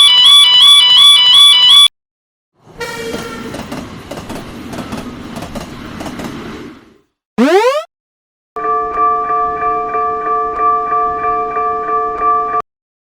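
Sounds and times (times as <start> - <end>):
train horn: 2.8 - 3.5
train rumbling: 3.1 - 6.9
railroad crossing bell ringing: 8.6 - 12.6.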